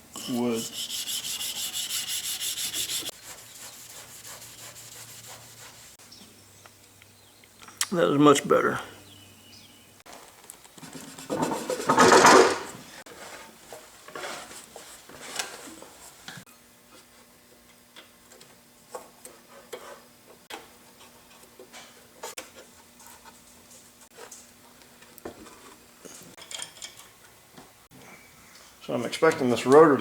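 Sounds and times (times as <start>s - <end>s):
metal scraping: 0.2s - 3.1s.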